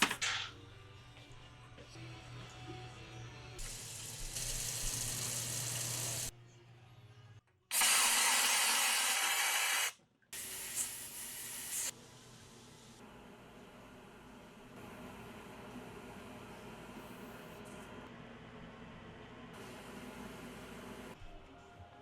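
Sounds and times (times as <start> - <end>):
airbrush spraying hiss: 3.6 - 6.3, 7.8 - 12.0.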